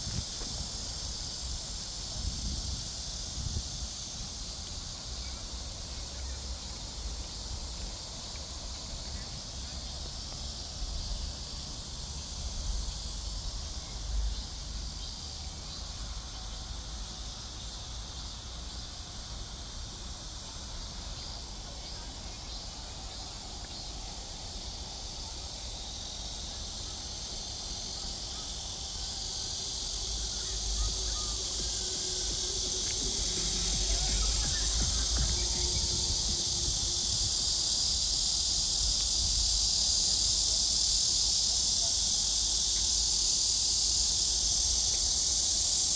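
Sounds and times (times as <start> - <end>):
chorus of insects: 0.0 - 45.9
low rumble: 30.1 - 37.4.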